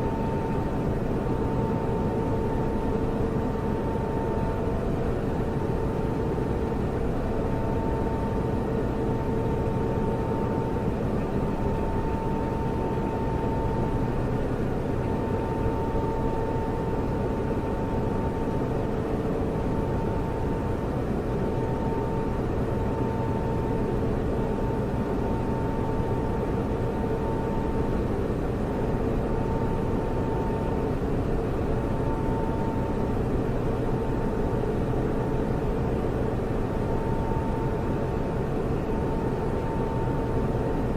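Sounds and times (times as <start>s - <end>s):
constant whine: 0.0s - 40.9s
server cooling fans whirring: 0.0s - 40.9s.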